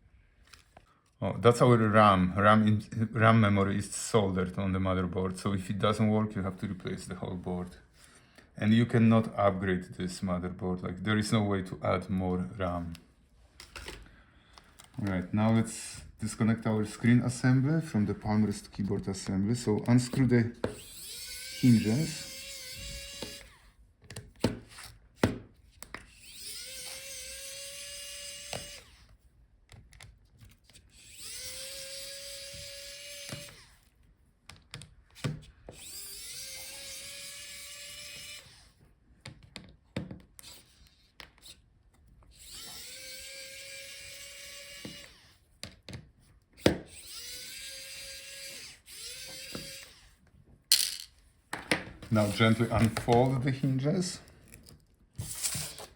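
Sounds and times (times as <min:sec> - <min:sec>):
electric screwdriver motor: 0:20.1 - 0:23.8, 0:26.1 - 0:29.2, 0:30.9 - 0:33.9, 0:35.7 - 0:38.8, 0:42.3 - 0:45.4, 0:46.6 - 0:50.2, 0:55.2 - 0:55.9.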